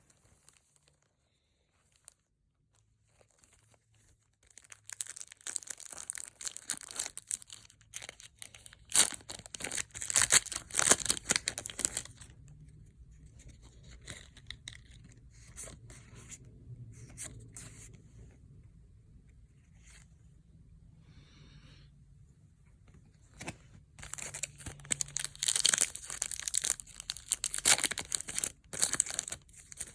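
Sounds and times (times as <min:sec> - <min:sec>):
foil wrapper tearing and crinkling: 0:04.5 - 0:12.2, 0:24.0 - 0:29.9
cards rustling: 0:13.3 - 0:16.3, 0:23.2 - 0:29.9.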